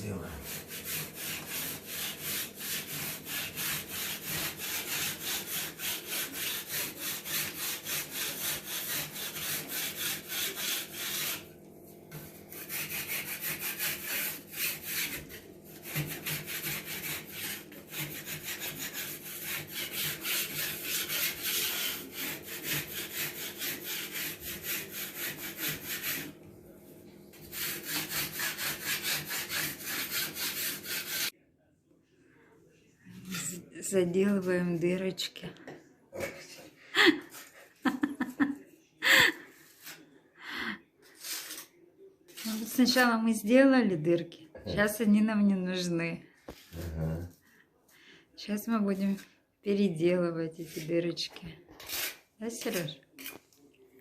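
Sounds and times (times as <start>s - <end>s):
hand tool scraping hard surface: 0.3s - 11.5s, 12.1s - 26.3s, 27.4s - 31.3s, 41.0s - 43.0s.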